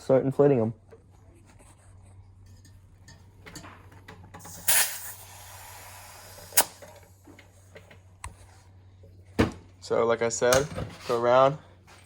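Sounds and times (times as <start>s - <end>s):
air hissing into tyre: 4.5s - 6.8s.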